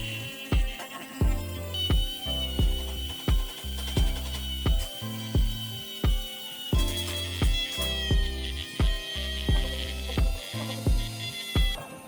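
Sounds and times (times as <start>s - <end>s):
sustained bass notes: 0.0s - 0.6s, 1.2s - 5.8s, 6.8s - 11.4s
kick drum beat: 0.0s - 11.8s.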